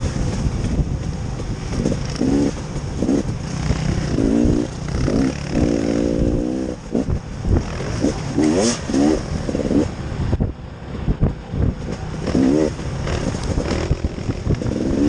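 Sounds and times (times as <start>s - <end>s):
small vehicle engine rumbling: 0.0s - 15.0s.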